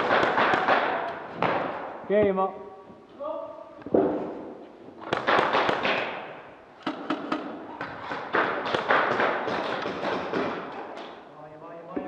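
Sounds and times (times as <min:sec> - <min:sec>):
airsoft guns firing: 0:00.0 - 0:02.0, 0:03.9 - 0:11.2.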